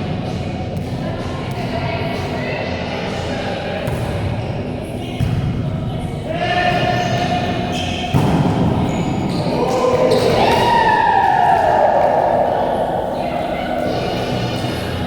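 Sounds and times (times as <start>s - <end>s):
hubbub of voices: 0.0s - 15.0s.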